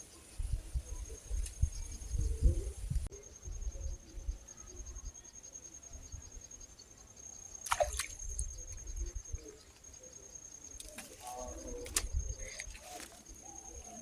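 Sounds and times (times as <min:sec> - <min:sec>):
water trickling and dripping: 0:07.6 - 0:09.8, 0:10.8 - 0:13.4.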